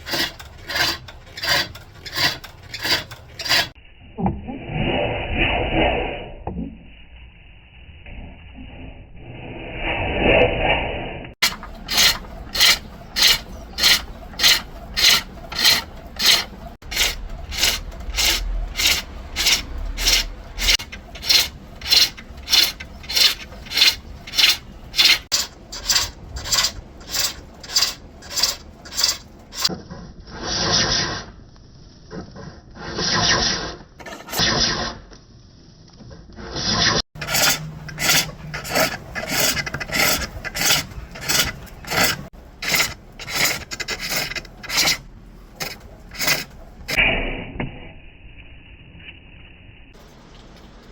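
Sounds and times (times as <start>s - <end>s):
turning tool scraping wood: 0.0s - 3.8s, 11.4s - 31.4s, 32.1s - 35.1s, 36.3s - 47.0s.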